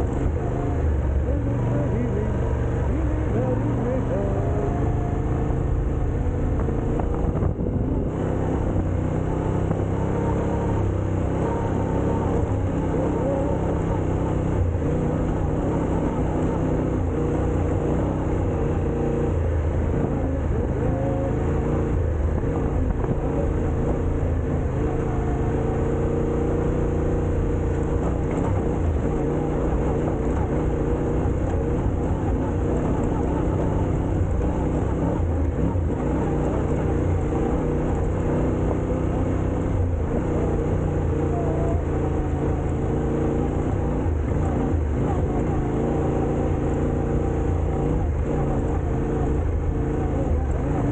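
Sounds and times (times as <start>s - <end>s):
off-road vehicle engine running: 0.0s - 50.9s.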